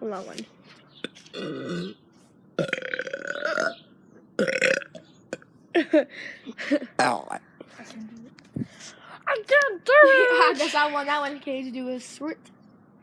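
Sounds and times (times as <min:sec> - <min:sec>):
person burping: 0:01.0 - 0:02.0, 0:02.6 - 0:03.8, 0:04.4 - 0:05.9, 0:06.9 - 0:07.4.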